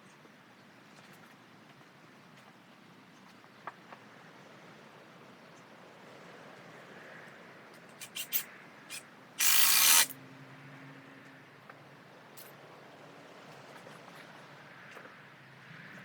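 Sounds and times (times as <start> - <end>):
cordless drill running: 9.4 - 10.1.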